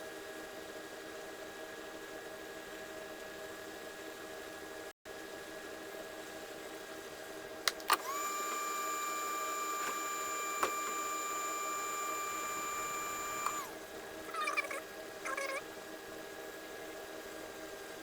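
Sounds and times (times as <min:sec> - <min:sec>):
hot air blower motor whine: 0:07.9 - 0:13.8.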